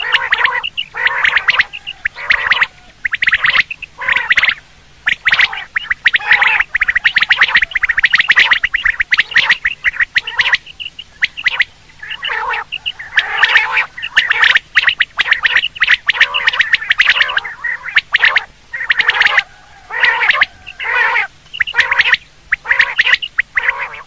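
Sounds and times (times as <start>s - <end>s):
quail calls: 0.0s - 24.0s.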